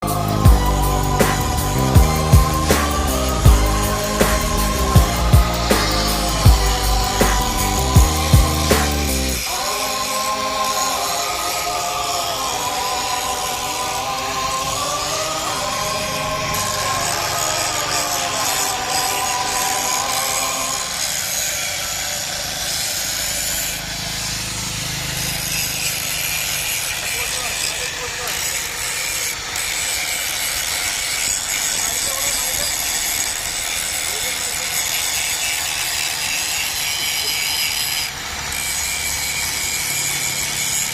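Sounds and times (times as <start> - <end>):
background music wavering melody: 0.0 - 11.8
steady hiss: 0.0 - 23.5
power tool grinding metal: 0.0 - 40.9.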